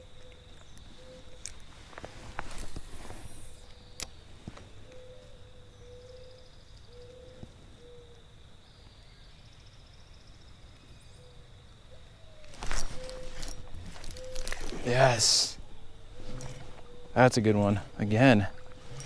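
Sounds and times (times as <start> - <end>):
bird cooing calls: 4.9 - 8.1, 12.3 - 19.0.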